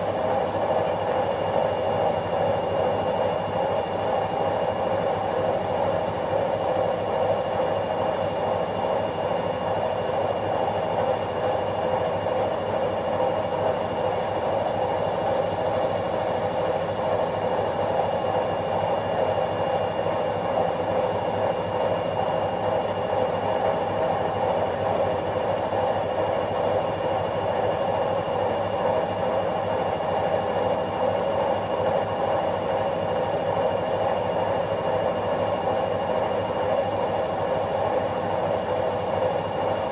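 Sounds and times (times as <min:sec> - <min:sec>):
washing machine running: 0:00.0 - 0:39.9.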